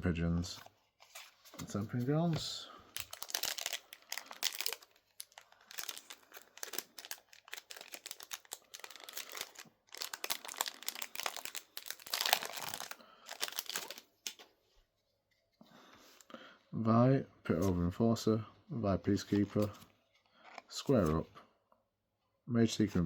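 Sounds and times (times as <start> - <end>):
plastic wrapping crinkling and tearing: 2.9 - 14.4.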